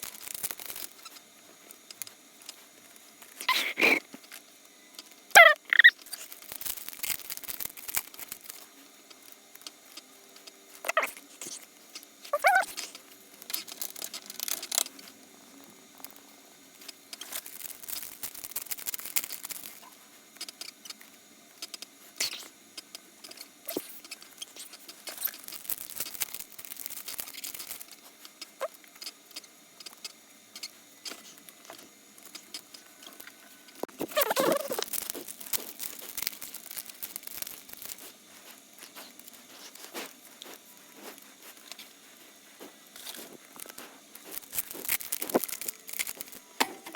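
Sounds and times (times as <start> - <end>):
wrappers crinkling and tearing: 0.0 - 1.2, 5.7 - 8.7, 16.9 - 19.9, 23.7 - 28.2, 33.8 - 46.5
cards being shuffled: 33.8 - 46.9.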